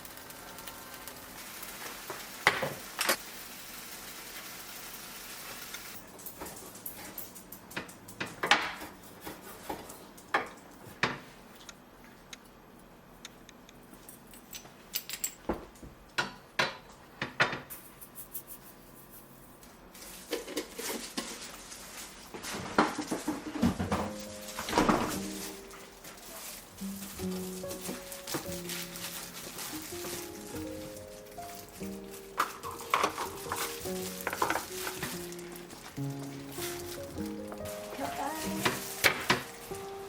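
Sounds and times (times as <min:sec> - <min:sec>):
food sizzling in a pan: 0:00.0 - 0:06.0
utensils clinking on pan and dishes: 0:20.0 - 0:40.0.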